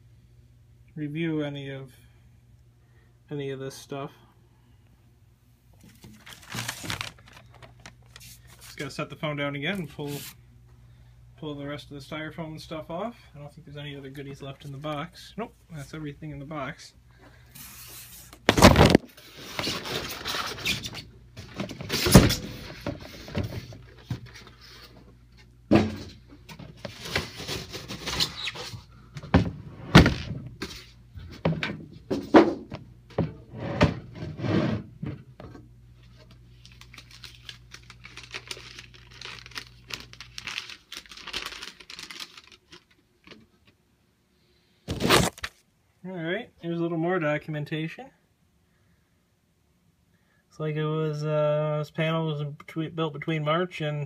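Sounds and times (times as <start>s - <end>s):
packing rustling: 5.8s - 8.8s, 36.6s - 43.4s
cardboard and styrofoam handling: 5.9s - 8.8s, 17.6s - 25.0s, 44.9s - 45.6s.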